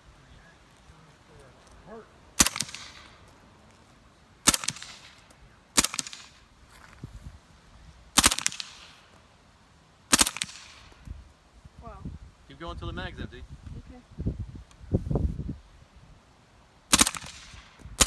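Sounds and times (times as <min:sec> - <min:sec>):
single gunshots with echo: 0:02.4 - 0:03.2, 0:04.4 - 0:06.4, 0:08.2 - 0:09.0, 0:10.1 - 0:11.0, 0:16.9 - 0:18.0.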